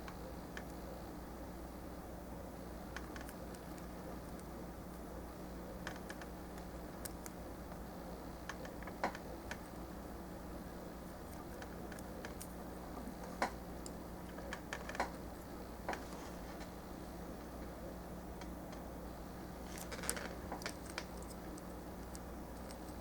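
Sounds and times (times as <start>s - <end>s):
faint steady hum: 0.0s - 23.0s.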